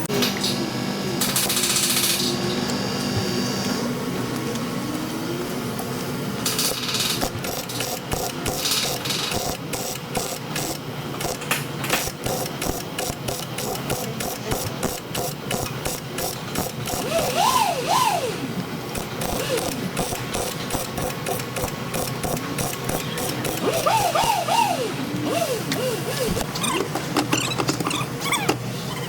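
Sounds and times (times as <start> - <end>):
sharp mechanical clicks: 6.4 - 27.9.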